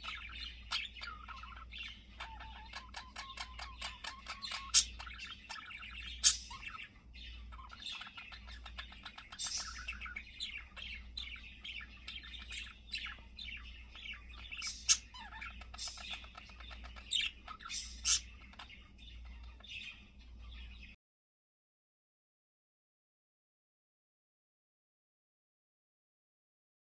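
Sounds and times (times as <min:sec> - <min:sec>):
budgerigar warbling: 0:00.0 - 0:20.0.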